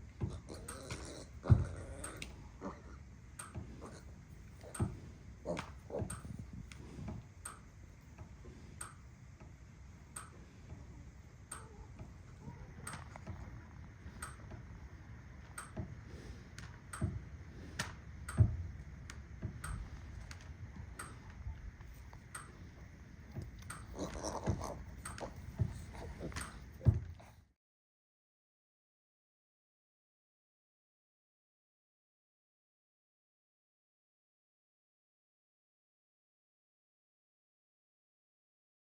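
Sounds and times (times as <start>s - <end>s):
electric fence charger clicking: 0.6s - 27.2s.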